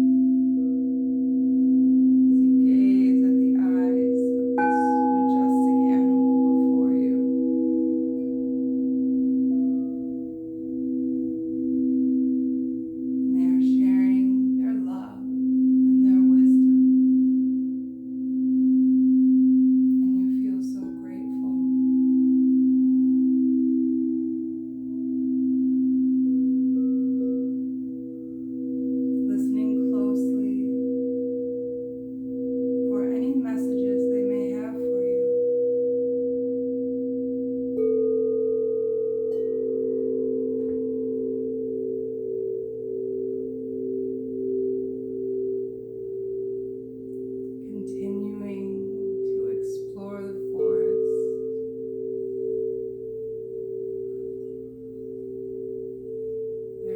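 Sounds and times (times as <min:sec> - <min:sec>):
singing bowls ringing: 0:00.0 - 0:56.9.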